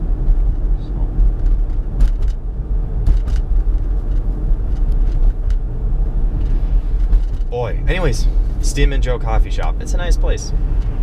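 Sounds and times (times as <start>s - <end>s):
car cabin road and engine rumble: 0.0s - 11.0s.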